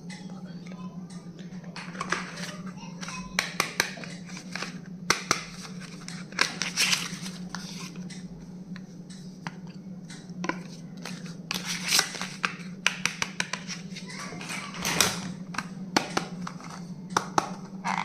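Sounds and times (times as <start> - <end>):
steady low hum: 0.0 - 18.0
wrapping rustling and tearing: 11.5 - 12.4.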